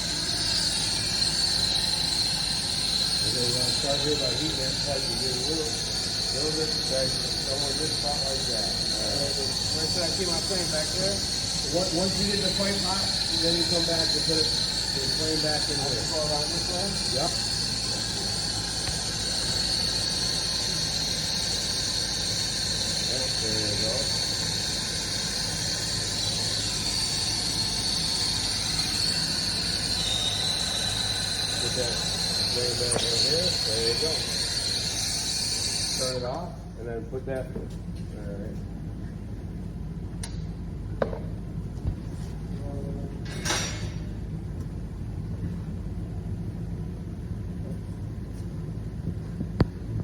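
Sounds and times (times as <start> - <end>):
gas torch hissing: 0.0 - 37.2.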